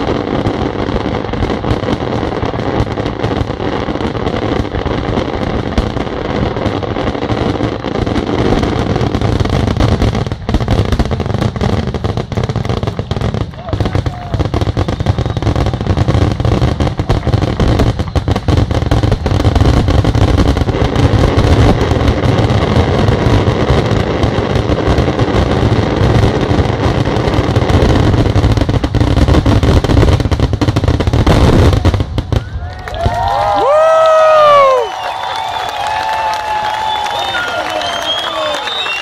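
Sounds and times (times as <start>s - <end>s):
firework bursts and bangs: 0.0s - 39.0s
gliding whistles: 14.7s - 15.9s, 34.8s - 39.0s.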